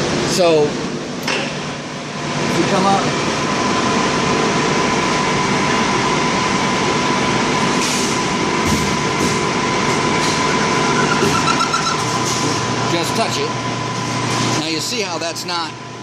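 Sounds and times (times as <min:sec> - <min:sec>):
metal lathe humming: 0:03.1 - 0:15.9.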